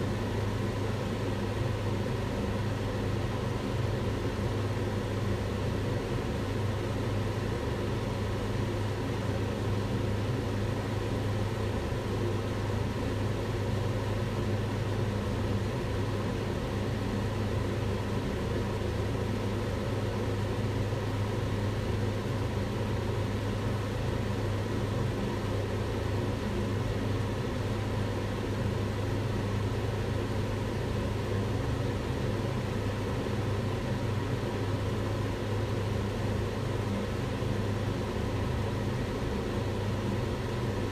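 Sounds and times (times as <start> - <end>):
range hood fan rushing air: 0.0 - 40.9.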